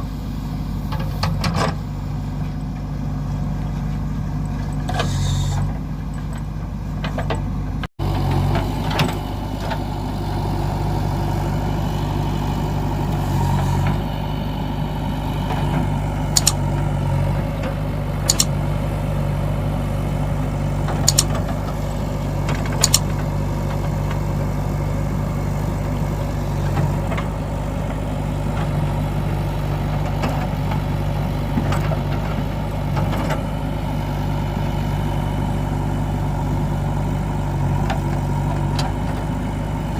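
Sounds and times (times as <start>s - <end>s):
diesel engine running: 0.0s - 39.9s
sharp clicks: 16.3s - 16.6s, 18.3s - 18.6s, 21.0s - 21.4s, 22.8s - 23.1s.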